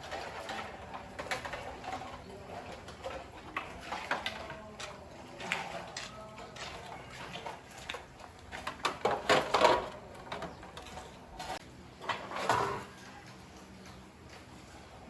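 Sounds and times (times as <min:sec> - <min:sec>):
objects scraping and clattering: 0:00.0 - 0:15.0.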